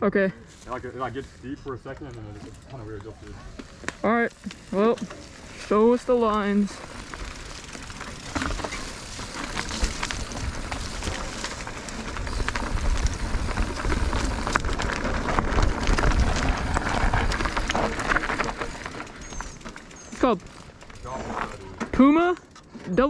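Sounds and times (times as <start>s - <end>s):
tyres crunching over gravel: 0.4s - 22.9s
bike rattling clicks: 1.9s - 22.8s
low rumble: 6.2s - 21.8s.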